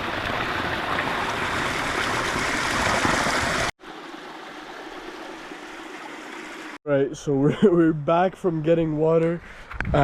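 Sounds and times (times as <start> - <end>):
quiet steady water rush: 0.0 - 6.8
spring water running and splashing: 0.0 - 6.8.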